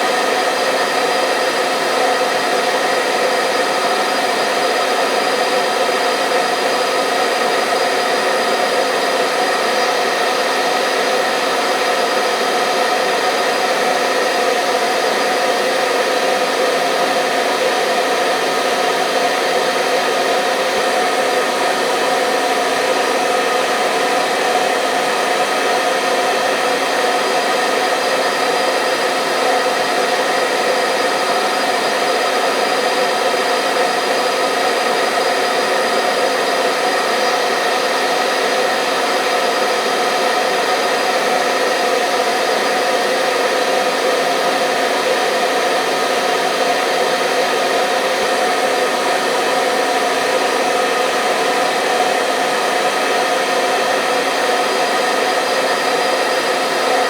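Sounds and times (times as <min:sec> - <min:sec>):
hair dryer running: 0:00.0 - 0:57.0.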